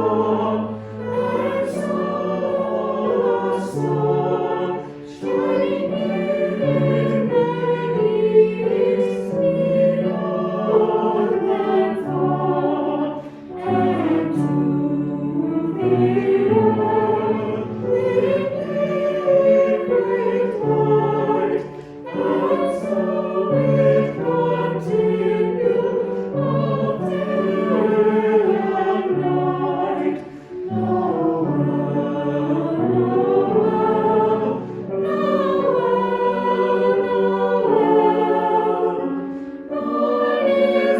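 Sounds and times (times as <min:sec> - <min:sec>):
choir singing a hymn: 0:00.0 - 0:40.9.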